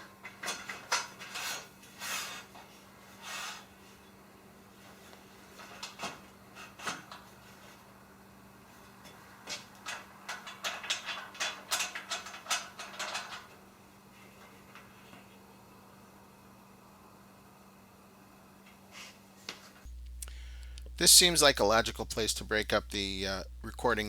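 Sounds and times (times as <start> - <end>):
metal parts clicking and knocking: 9.8 - 13.5.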